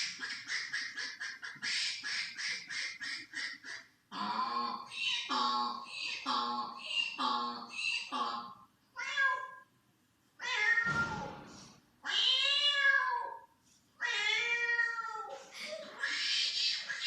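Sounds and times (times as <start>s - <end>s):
cat meowing: 9.0s - 9.6s, 10.4s - 11.4s, 12.0s - 13.4s, 14.0s - 15.4s.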